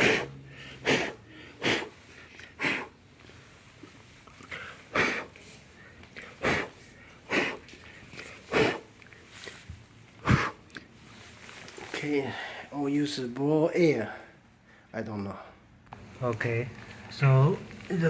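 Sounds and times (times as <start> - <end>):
person blowing puffs of air: 10.2 - 10.6.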